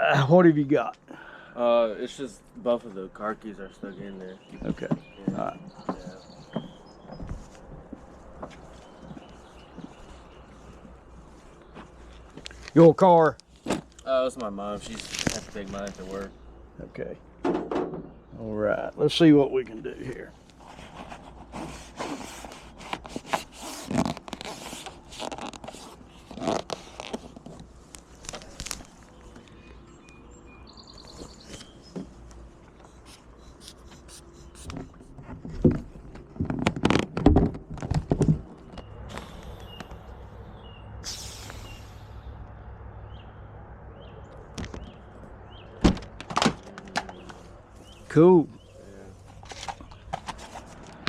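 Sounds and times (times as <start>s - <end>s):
bird chirping: 1.3s - 12.6s, 28.9s - 35.1s, 38.6s - 45.8s, 47.0s - 50.4s
tools scraping and rustling: 20.4s - 29.7s, 49.1s - 51.0s
short hiss: 41.0s - 42.1s.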